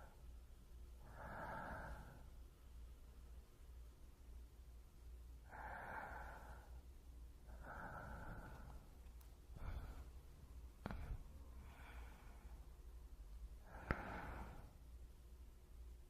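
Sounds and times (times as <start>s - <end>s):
person breathing: 0.0s - 2.6s, 5.4s - 15.1s
low steady hum: 0.0s - 16.0s.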